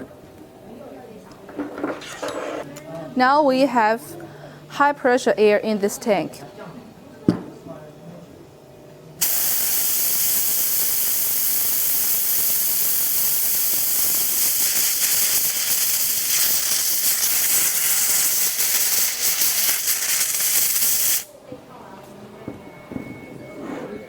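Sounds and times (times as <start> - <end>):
high-pressure air hissing: 9.2 - 21.3.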